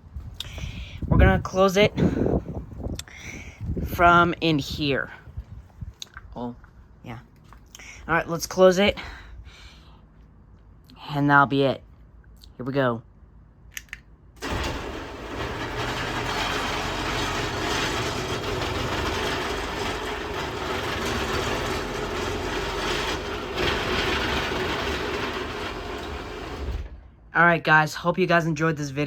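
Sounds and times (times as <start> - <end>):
garage door opener running: 14.4 - 27.2.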